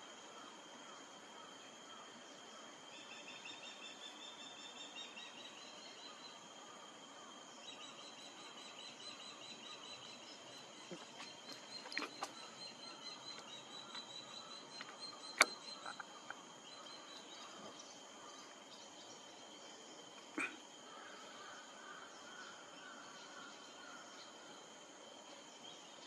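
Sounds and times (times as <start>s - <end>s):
insects trilling: 0.0s - 26.0s
sharp clicks: 14.8s - 16.4s.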